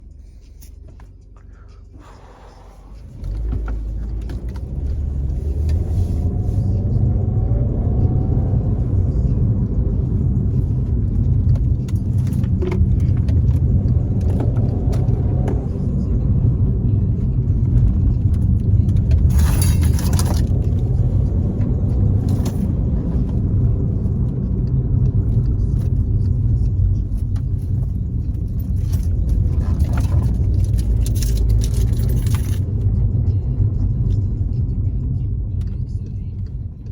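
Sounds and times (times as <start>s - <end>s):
car engine and road rumble: 0.0s - 36.9s.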